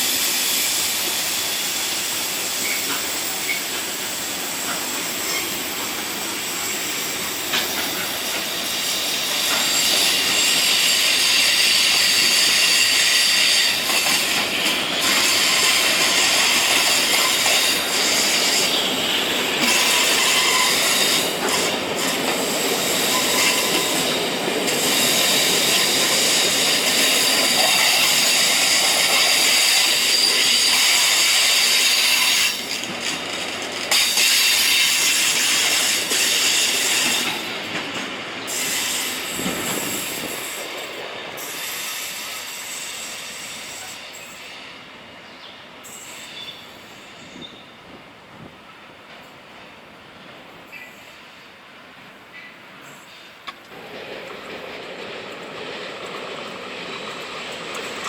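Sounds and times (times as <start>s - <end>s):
train rolling on rails: 0.0s - 58.0s
high-pitched wheel squeal: 19.6s - 21.8s, 22.9s - 24.1s.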